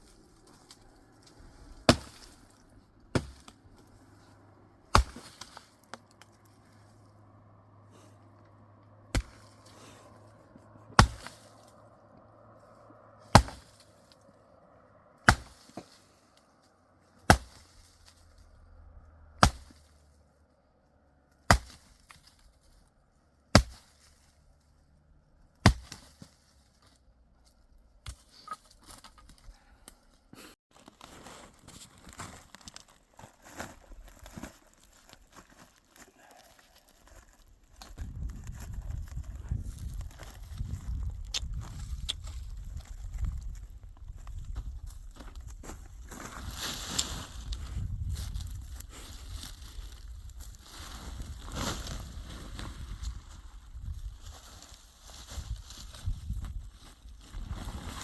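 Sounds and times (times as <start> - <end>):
wood being chopped: 1.8 - 3.6, 4.9 - 6.1, 9.1 - 9.6, 10.9 - 11.5, 13.3 - 13.9, 15.2 - 16.0, 17.2 - 17.7, 19.4 - 19.9, 21.4 - 22.3, 23.5 - 24.0, 25.6 - 26.4.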